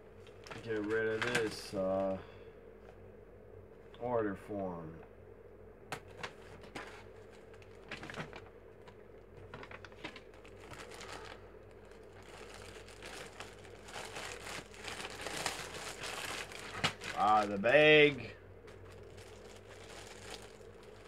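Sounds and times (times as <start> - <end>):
plastic bag crinkling: 6.1 - 21.0.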